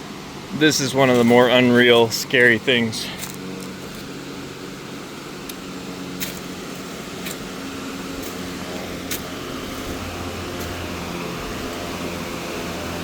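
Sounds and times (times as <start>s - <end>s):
motor humming: 0.0s - 13.0s.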